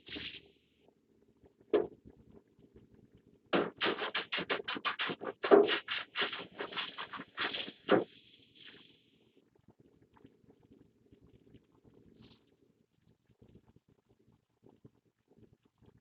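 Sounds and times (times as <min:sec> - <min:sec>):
rapid scraping on a panel: 0:03.6 - 0:08.1.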